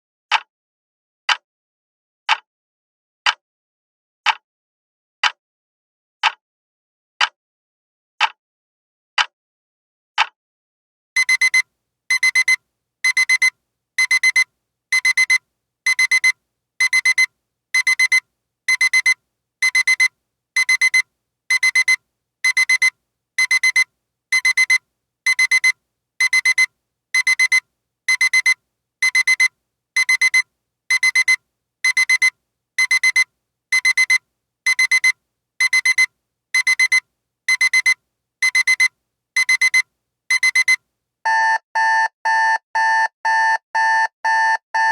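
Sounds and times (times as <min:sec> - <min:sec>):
alarm clock beeping: 0:11.2 - 0:14.4, 0:15.0 - 0:23.8, 0:24.4 - 0:33.2, 0:33.8 - 0:44.9.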